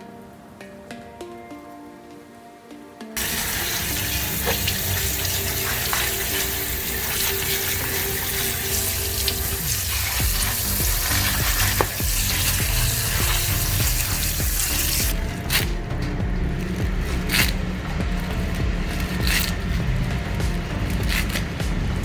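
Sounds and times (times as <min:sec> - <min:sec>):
tap running into a sink: 0:03.2 - 0:16.2.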